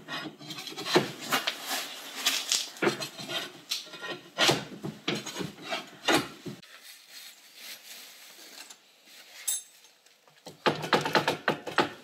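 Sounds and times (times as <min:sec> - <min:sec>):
metal hardware scraping: 0:00.0 - 0:01.1.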